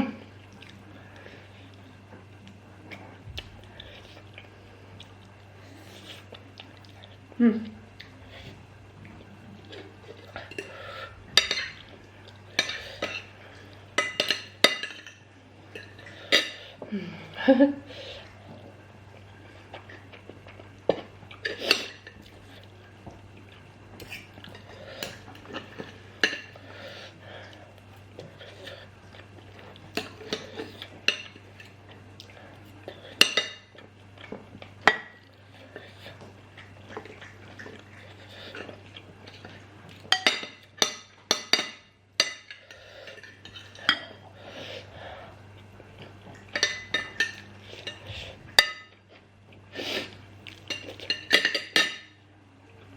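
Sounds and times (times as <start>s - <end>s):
cutlery clinking on a plate: 50.7s - 52.2s.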